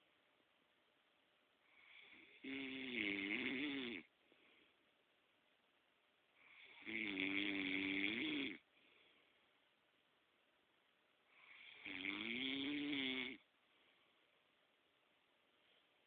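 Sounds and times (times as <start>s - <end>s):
quiet breathing: 1.5s - 5.1s, 6.2s - 9.9s, 11.2s - 14.8s, 15.4s - 16.0s
man snoring: 1.8s - 4.1s, 6.5s - 8.6s, 11.4s - 13.4s.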